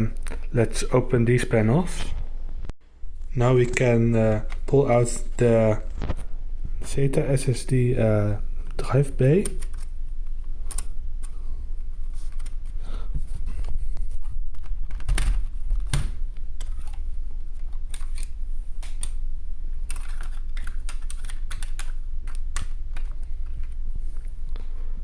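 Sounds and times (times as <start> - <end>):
steady low hum: 0.0 - 25.0
laptop parts clicking and knocking: 19.8 - 23.7.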